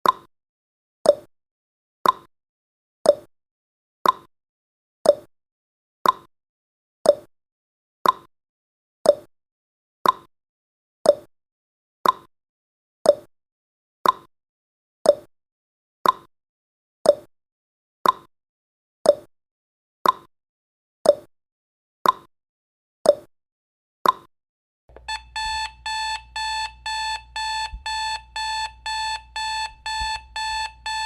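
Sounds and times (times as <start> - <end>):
alarm clock beeping: 24.9 - 31.0
clock ticking: 24.9 - 31.0.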